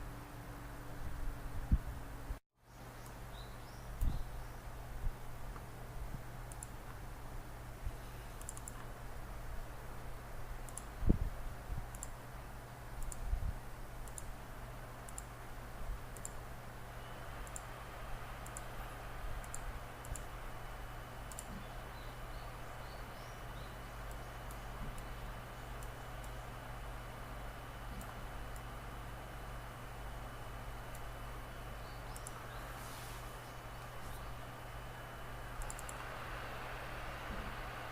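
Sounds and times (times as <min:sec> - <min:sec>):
low steady hum: 0:00.0 - 0:37.9
computer mouse clicking: 0:06.4 - 0:07.0, 0:08.3 - 0:08.9, 0:10.6 - 0:11.0, 0:11.9 - 0:12.2, 0:13.0 - 0:13.3, 0:14.0 - 0:14.4, 0:15.0 - 0:15.4, 0:16.1 - 0:16.5, 0:17.4 - 0:17.8, 0:18.4 - 0:18.8, 0:19.4 - 0:20.4, 0:21.3 - 0:21.7, 0:24.0 - 0:25.1, 0:25.8 - 0:26.4, 0:27.9 - 0:28.7, 0:32.1 - 0:32.4, 0:35.5 - 0:36.2.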